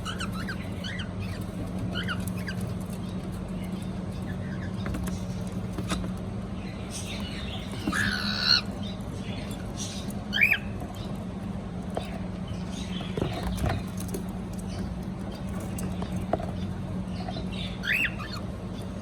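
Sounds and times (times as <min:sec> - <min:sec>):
cockatiel chirping and calling: 0:00.0 - 0:06.1, 0:06.8 - 0:11.2, 0:17.1 - 0:19.0
steady low hum: 0:00.0 - 0:19.0.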